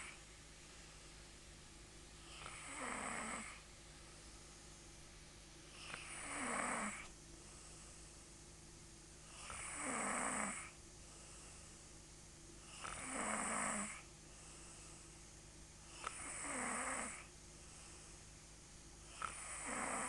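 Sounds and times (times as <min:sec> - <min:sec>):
woman snoring loudly: 0:02.3 - 0:03.6, 0:05.8 - 0:07.1, 0:09.4 - 0:10.8, 0:12.8 - 0:14.0, 0:16.0 - 0:17.3, 0:19.1 - 0:20.0.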